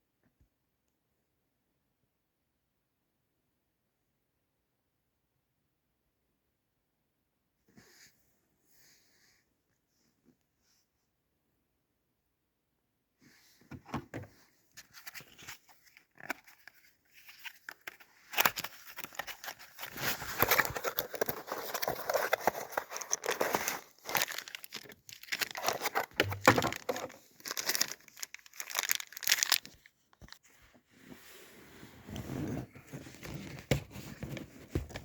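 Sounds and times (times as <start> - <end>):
crinkling and rustling handling noise: 13.2 - 35.0.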